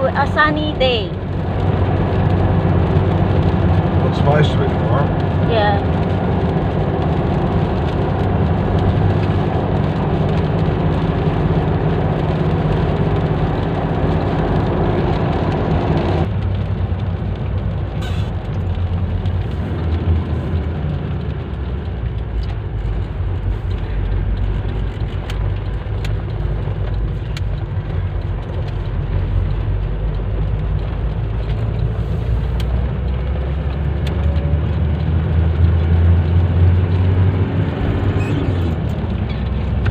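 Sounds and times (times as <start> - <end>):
car engine and road noise: 0.0 - 39.9
tyre hiss on wet road: 18.0 - 18.4, 31.8 - 32.9.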